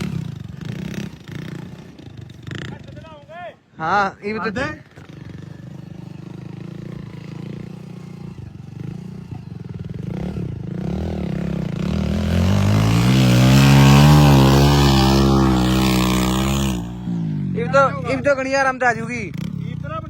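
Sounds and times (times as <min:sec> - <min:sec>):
diesel engine revving: 0:10.9 - 0:17.5.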